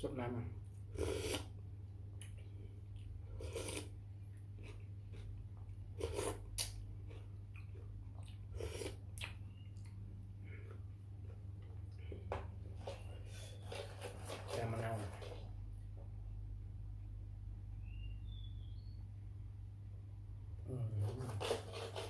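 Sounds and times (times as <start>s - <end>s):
steady low hum: 0.0s - 21.3s
person crunching and chewing: 3.0s - 9.4s.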